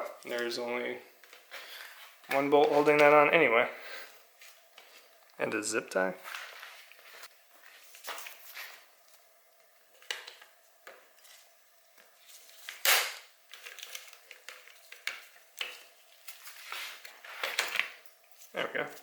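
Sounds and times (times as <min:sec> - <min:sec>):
plastic parts clicking and crackling: 0:12.6 - 0:18.0.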